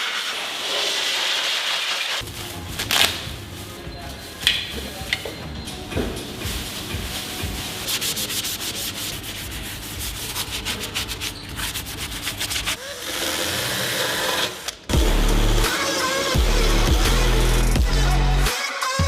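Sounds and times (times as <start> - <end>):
sanding car bodywork: 0.0 - 2.2, 6.4 - 13.0
loud music with heavy bass: 14.9 - 19.0.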